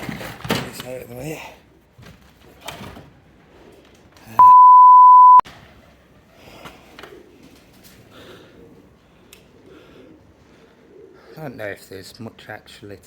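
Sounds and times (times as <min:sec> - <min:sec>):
censor bleep tone: 0:04.4 - 0:05.4.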